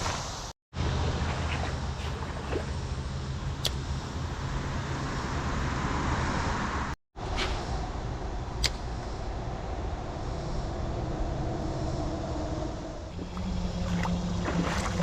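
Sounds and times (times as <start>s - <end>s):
rushing creek water: 1.1s - 3.1s, 13.1s - 15.0s
sharp click: 8.6s - 8.9s.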